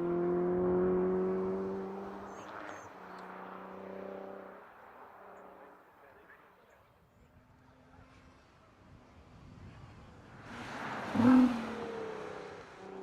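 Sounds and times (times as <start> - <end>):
car engine accelerating uphill: 0.0 - 6.0, 9.9 - 13.0.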